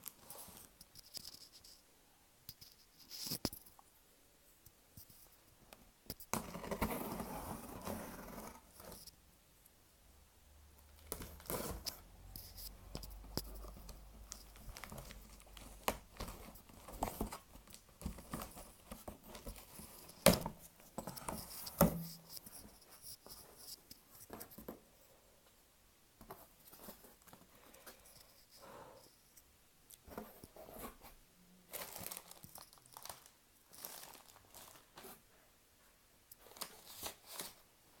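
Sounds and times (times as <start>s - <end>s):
packing tearing and crinkling: 31.7s - 34.9s.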